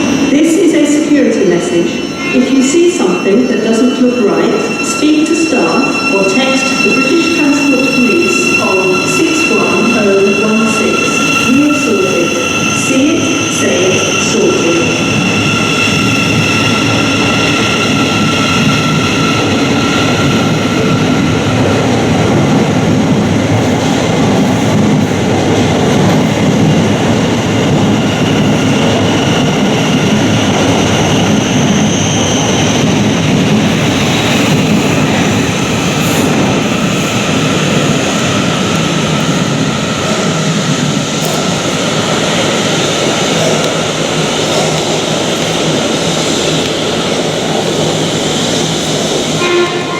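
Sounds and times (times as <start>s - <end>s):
high steady tones: 0.0s - 23.1s
train wheels rumbling: 0.0s - 49.9s.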